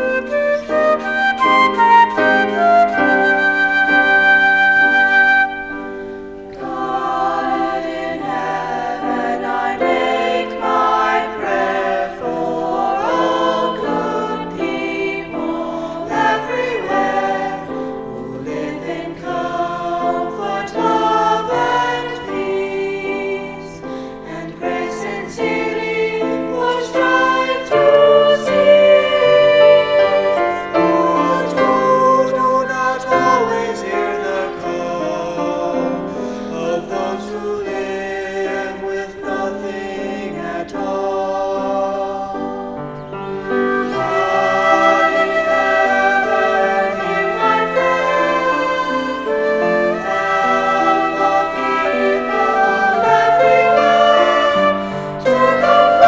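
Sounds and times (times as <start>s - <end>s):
flute holding a note: 0.0s - 6.1s, 49.1s - 54.9s
choir singing: 0.0s - 56.0s.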